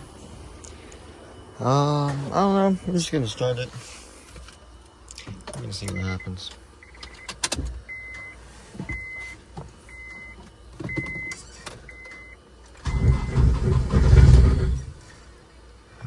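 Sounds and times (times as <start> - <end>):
dashboard warning chime beeping: 5.6 - 14.8
engine cranking and rough rumble: 12.8 - 15.3.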